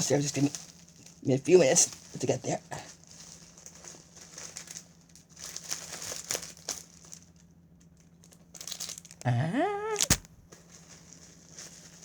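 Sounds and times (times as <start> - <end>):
packaging crinkling: 3.0 - 7.4, 8.5 - 12.0
packaging tearing: 8.6 - 10.3.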